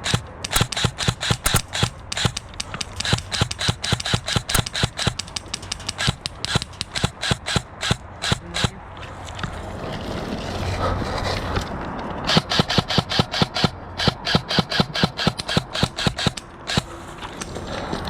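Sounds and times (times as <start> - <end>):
airsoft gun rapid shots: 0.0 - 8.8, 12.3 - 17.0.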